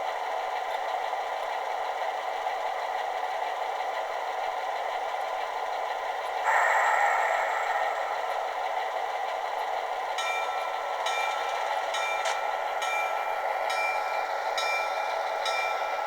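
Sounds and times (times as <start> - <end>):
model diesel locomotive engine: 0.0 - 16.0
loud multi-pitch tone: 6.5 - 9.6.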